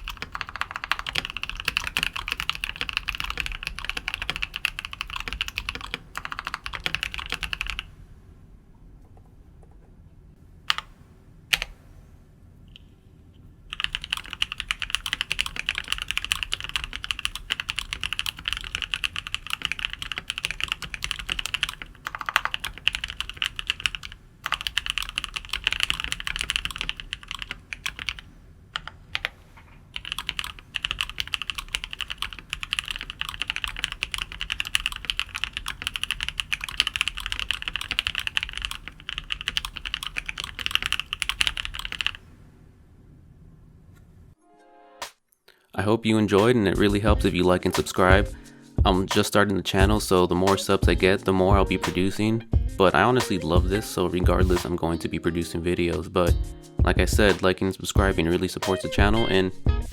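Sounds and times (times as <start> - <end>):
fast mechanical keyboard typing: 0.0 - 7.9, 13.7 - 28.2, 30.0 - 42.2.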